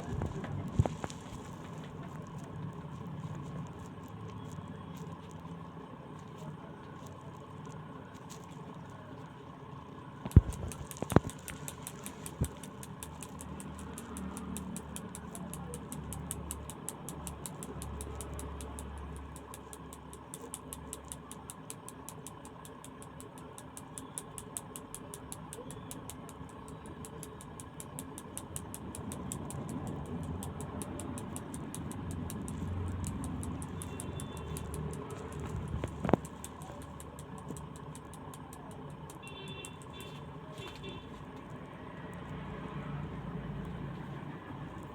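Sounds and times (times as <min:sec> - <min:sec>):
steady engine-like hum: 0:00.0 - 0:44.9
fast high ticking: 0:10.3 - 0:40.5.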